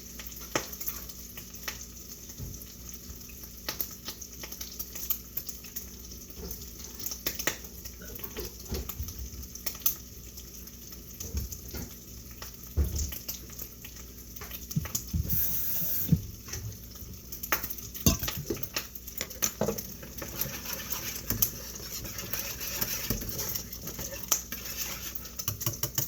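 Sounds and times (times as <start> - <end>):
running water: 14.4 - 25.3
utensils clinking on pots and pans: 18.0 - 26.0.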